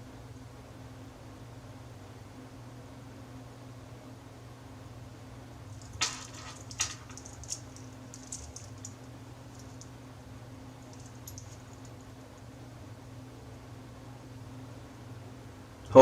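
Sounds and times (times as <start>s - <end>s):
low steady hum: 0.0s - 16.0s
light handling clicks: 10.9s - 11.9s.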